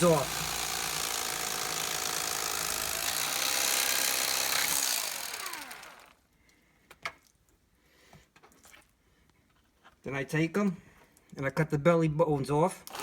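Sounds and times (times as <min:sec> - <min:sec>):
motor winding down whine: 0:00.0 - 0:06.1
electric carving knife cutting: 0:00.0 - 0:06.2.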